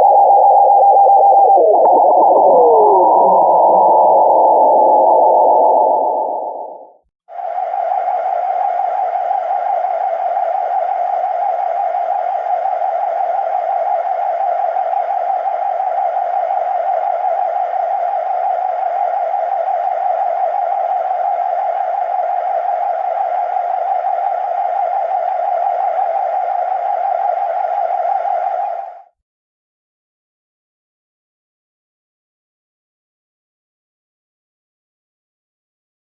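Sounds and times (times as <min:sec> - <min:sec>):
electronic spaceship hum: 0:00.0 - 0:06.9, 0:07.5 - 0:29.1.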